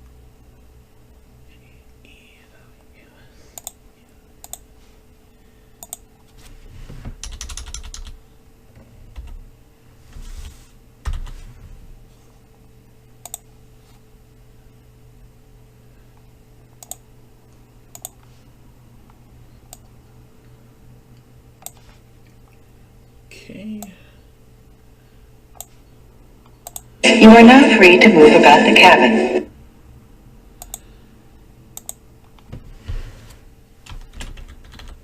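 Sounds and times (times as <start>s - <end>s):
low electrical hum: 0.0s - 35.0s
keyboard typing: 7.2s - 8.2s, 17.9s - 18.2s, 33.8s - 35.0s.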